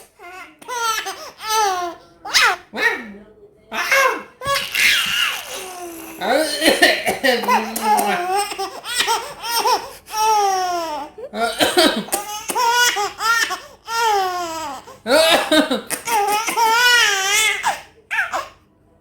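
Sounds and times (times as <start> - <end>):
baby laughing: 0.2 - 2.6, 3.8 - 18.5.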